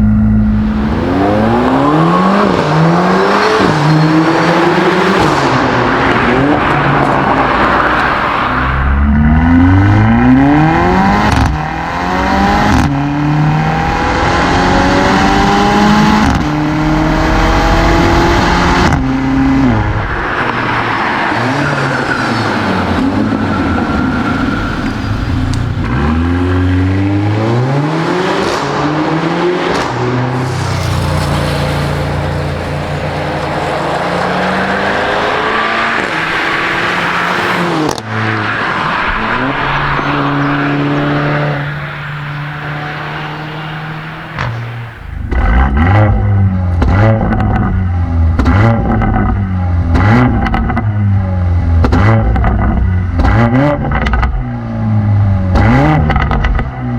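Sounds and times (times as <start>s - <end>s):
engine revving: 0.0s - 51.2s, 51.8s - 56.7s
car engine accelerating hard: 0.0s - 56.9s
exhaust cracks: 18.6s - 27.1s, 29.7s - 50.9s.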